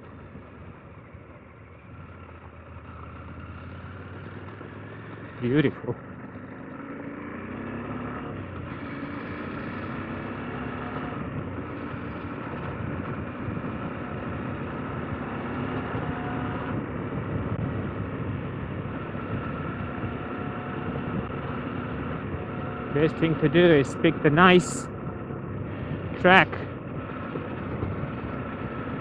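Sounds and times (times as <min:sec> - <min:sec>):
motorcycle engine running: 0:00.0 - 0:29.0
wind noise: 0:12.5 - 0:22.5, 0:24.3 - 0:29.0.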